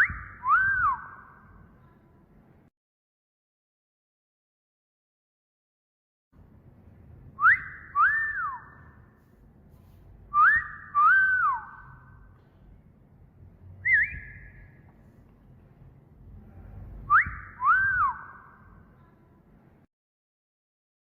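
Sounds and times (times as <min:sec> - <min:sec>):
wolf whistle: 0:00.0 - 0:01.3, 0:07.4 - 0:08.9, 0:10.3 - 0:12.1, 0:13.8 - 0:14.8, 0:17.0 - 0:18.6.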